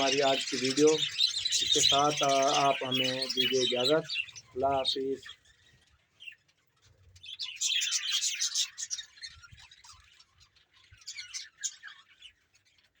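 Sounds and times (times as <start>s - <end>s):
flock of budgerigars chattering: 0.0s - 13.0s.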